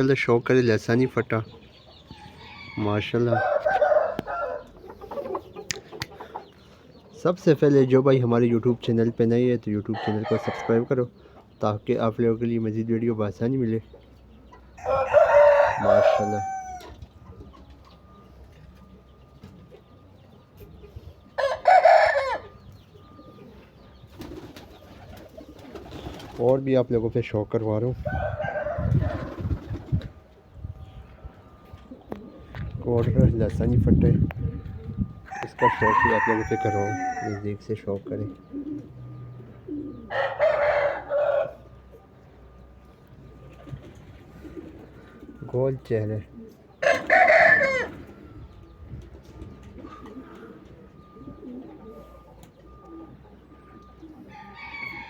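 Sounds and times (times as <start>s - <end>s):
rooster crowing: 2.1s - 4.8s, 14.8s - 17.0s, 21.4s - 22.6s, 28.0s - 29.3s, 35.3s - 37.5s, 40.1s - 41.7s, 46.8s - 48.2s, 54.2s - 55.0s.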